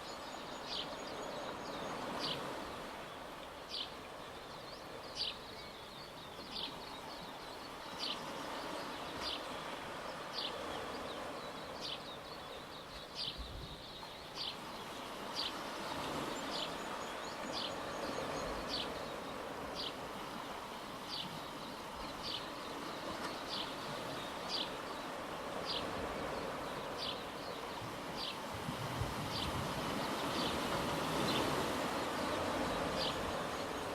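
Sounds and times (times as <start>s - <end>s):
water and waves: 0.0s - 33.9s.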